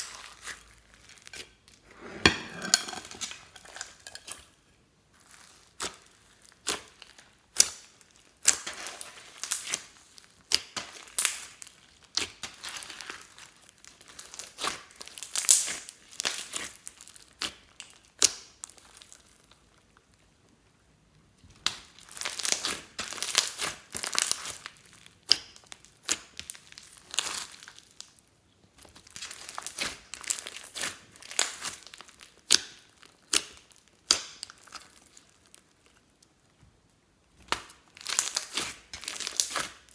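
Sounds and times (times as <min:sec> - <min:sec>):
slime crackling and popping: 0:28.9 - 0:35.6, 0:37.4 - 0:39.9.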